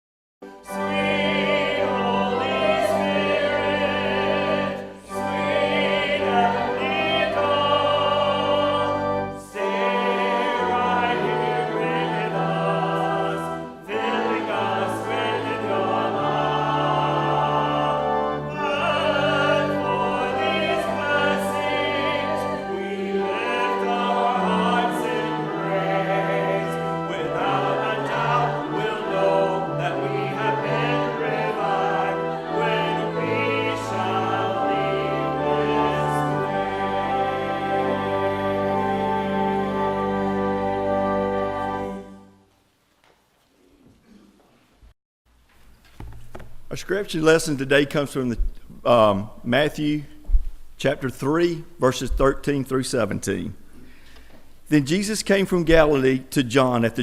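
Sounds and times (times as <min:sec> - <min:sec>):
choral singing with vibrato: 0:00.4 - 0:42.4.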